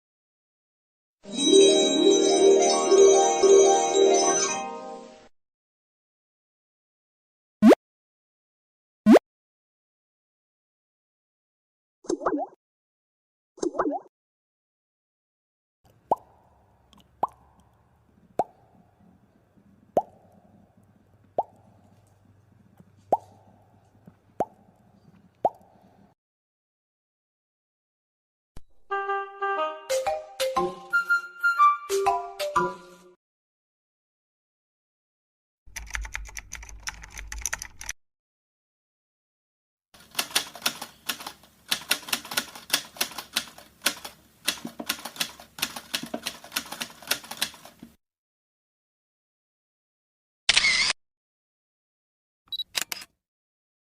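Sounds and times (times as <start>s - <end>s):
keyboard typing clicks: 35.7s - 38.0s.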